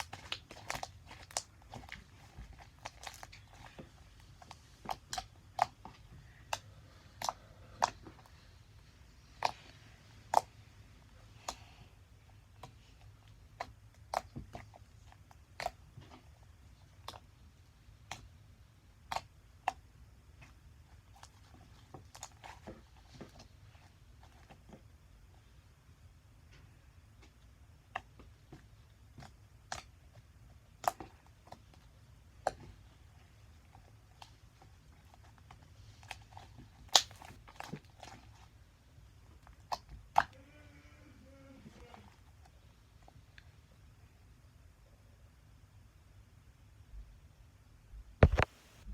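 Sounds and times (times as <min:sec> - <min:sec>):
slime air pockets popping: 0:48.2 - 0:48.6.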